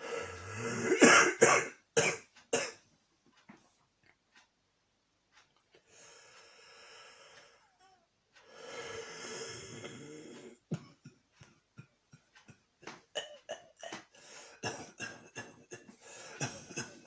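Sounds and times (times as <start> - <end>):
man breathing wheezily: 8.5 - 10.6, 14.1 - 14.7, 15.9 - 16.7.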